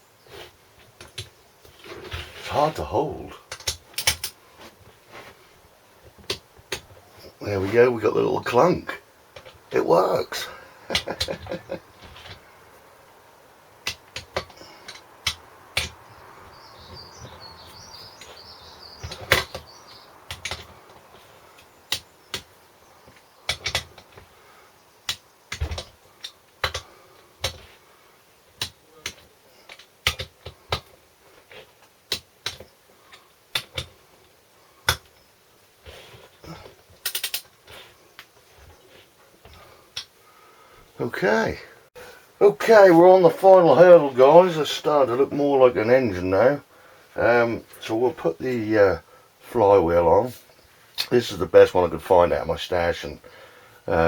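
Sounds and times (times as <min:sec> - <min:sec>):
hand tools clicking and knocking: 0:00.8 - 0:05.2, 0:09.3 - 0:09.7, 0:10.3 - 0:12.5, 0:13.8 - 0:16.2, 0:16.8 - 0:24.4, 0:25.0 - 0:27.8, 0:28.4 - 0:40.2.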